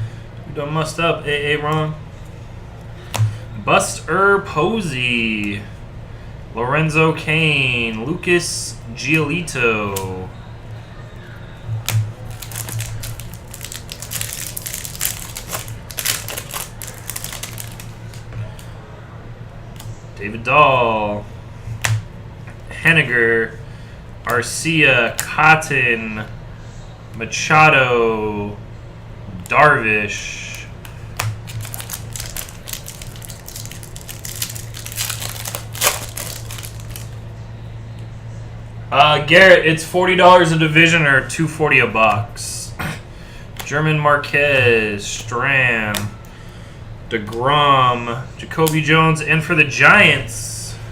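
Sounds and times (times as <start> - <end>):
steady low hum: 0.0 - 50.9
foil wrapper crinkling: 11.8 - 18.3, 31.2 - 37.2
cards clicking and rustling: 11.8 - 18.6, 31.2 - 37.2.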